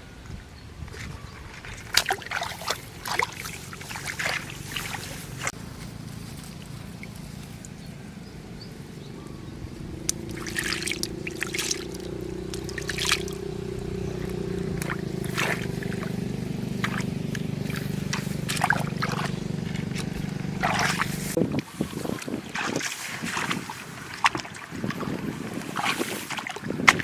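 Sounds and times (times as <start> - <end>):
water sloshing and splashing: 0.8 - 27.0
low drone: 2.8 - 22.5.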